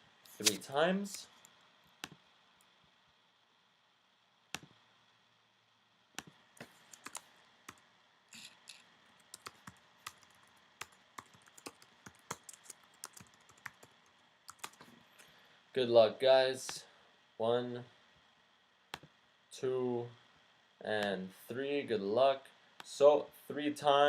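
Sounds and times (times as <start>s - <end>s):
typing on computer keyboard: 7.0s - 7.2s, 9.2s - 14.8s.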